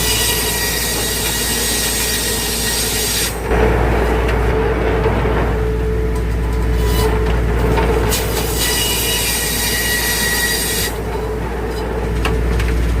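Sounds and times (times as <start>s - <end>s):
sawmill running: 0.0s - 13.0s
saw blade squealing through log: 6.7s - 7.3s, 8.1s - 12.2s.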